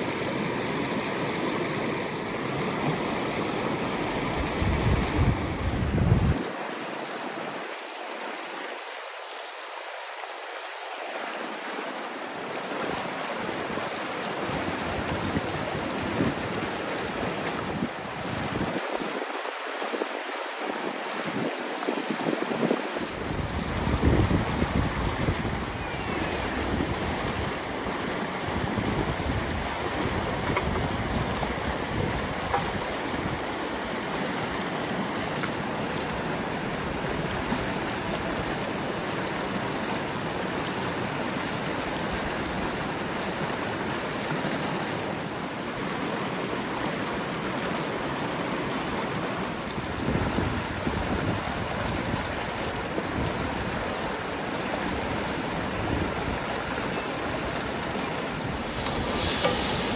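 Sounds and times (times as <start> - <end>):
river flowing: 0.0 - 50.1, 51.1 - 59.9
wind buffeting microphone: 4.0 - 6.5, 21.2 - 34.5, 49.8 - 59.9.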